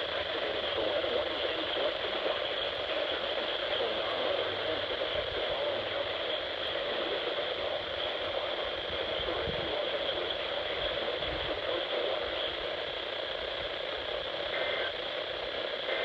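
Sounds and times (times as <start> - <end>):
radio static hiss: 0.0 - 16.0.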